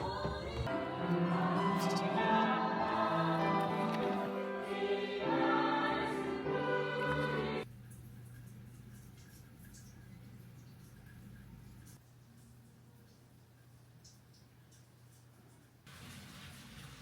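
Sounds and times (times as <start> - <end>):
music with held vocal-like chords: 0.0 - 7.7.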